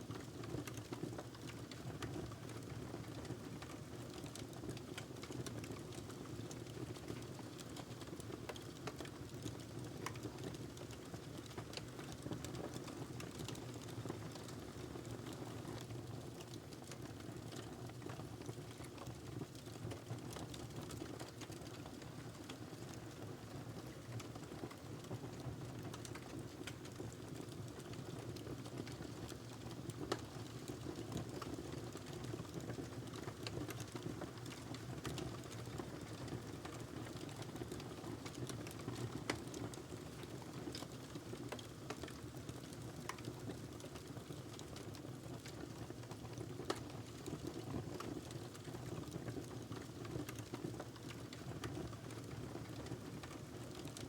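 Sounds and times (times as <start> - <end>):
fire crackles and pops: 0.1 - 23.2, 23.9 - 54.0.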